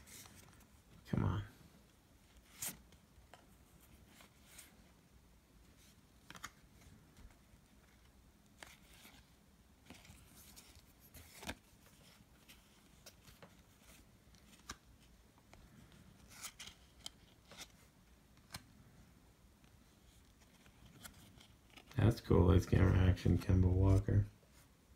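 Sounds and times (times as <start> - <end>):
trading cards rustling and clicking: 6.2 - 18.8, 20.1 - 24.2.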